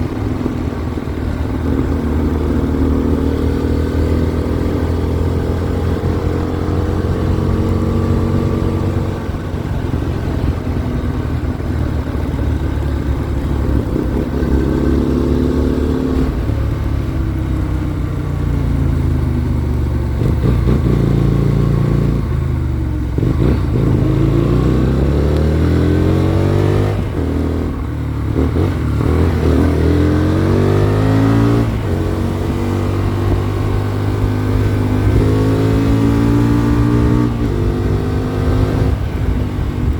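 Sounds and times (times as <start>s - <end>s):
motorcycle engine revving: 0.0s - 39.9s
wind noise on microphone: 23.2s - 39.9s.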